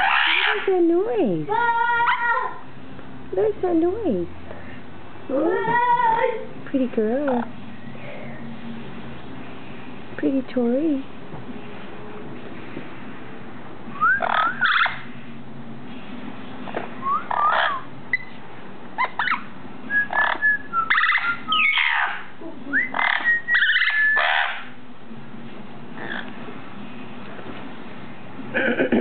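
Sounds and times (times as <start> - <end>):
parrot whistles and squawks: 0.0 - 0.7, 13.9 - 15.1, 17.0 - 18.4, 19.0 - 24.7.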